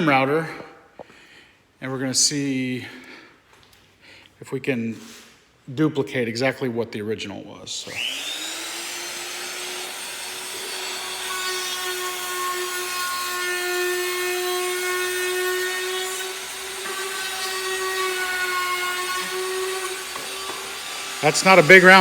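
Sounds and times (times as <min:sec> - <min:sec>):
electric router whining: 0:07.8 - 0:22.0.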